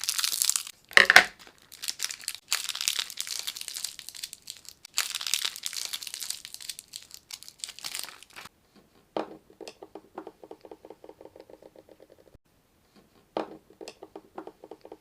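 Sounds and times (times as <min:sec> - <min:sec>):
plastic wrapper crinkling: 0:00.0 - 0:08.5.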